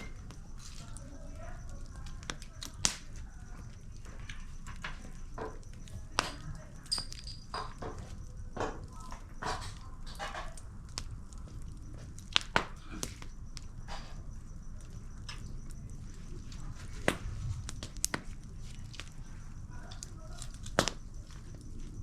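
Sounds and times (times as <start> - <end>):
steady low rumble: 13.2 - 19.8.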